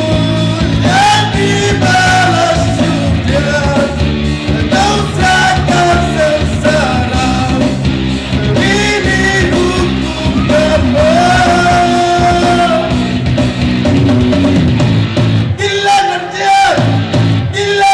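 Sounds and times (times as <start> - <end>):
man singing rock song: 0.0 - 14.7, 15.4 - 17.9
backing band playing: 0.0 - 17.9.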